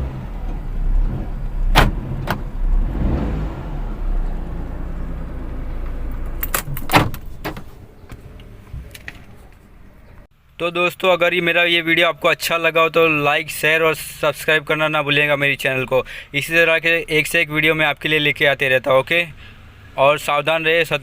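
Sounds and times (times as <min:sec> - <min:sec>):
low rumble: 0:00.0 - 0:10.3
sharp clicks and knocks: 0:05.8 - 0:10.3.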